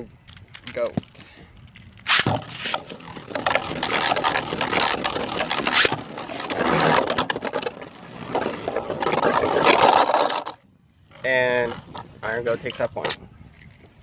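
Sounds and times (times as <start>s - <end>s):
clicking and rattling impacts: 0.0s - 14.0s
spinning top launch snap: 2.0s - 4.0s
spinning tops whirring: 2.1s - 10.5s.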